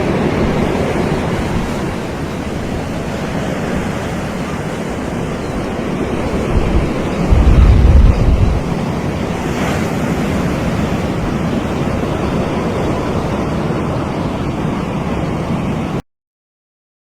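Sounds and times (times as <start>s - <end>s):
ocean surf washing onto beach: 0.0s - 16.0s.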